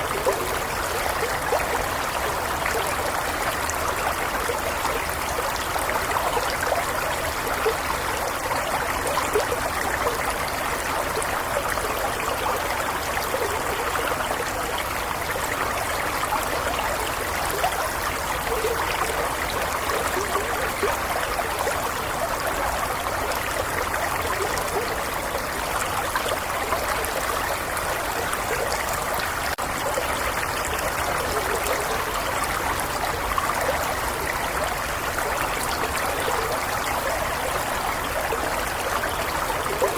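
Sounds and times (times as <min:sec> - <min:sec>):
stream trickling and gurgling: 0:00.0 - 0:39.9.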